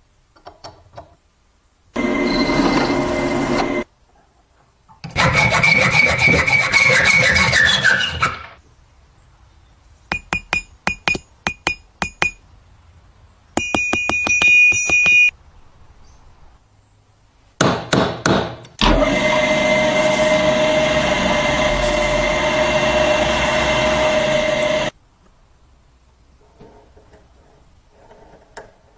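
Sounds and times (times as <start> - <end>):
mechanical whirring: 2.0 - 3.8, 18.8 - 24.9
hammer tapping metal: 10.1 - 12.4, 13.6 - 15.3.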